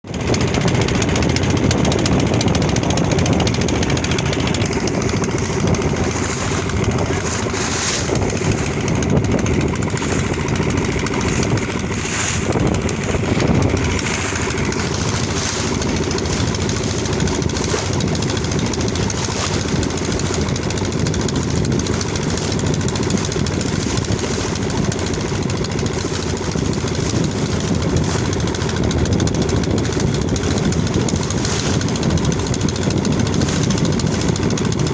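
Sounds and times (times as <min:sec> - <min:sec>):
engine rumbling: 0:00.0 - 0:34.9.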